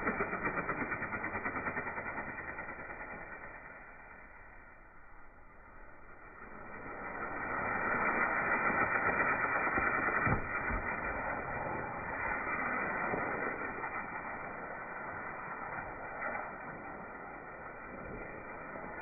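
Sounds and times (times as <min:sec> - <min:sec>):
fountain firework hissing: 0:00.0 - 0:19.0.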